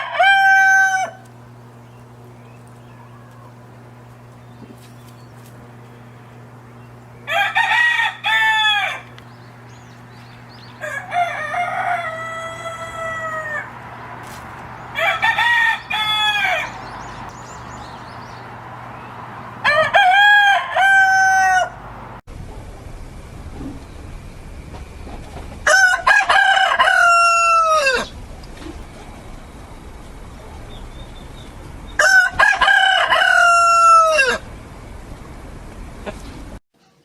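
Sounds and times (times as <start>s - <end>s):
rooster crowing: 0.0s - 1.3s, 7.2s - 9.2s, 10.5s - 14.0s, 14.8s - 17.2s, 19.5s - 21.9s, 25.6s - 28.1s, 31.9s - 34.5s.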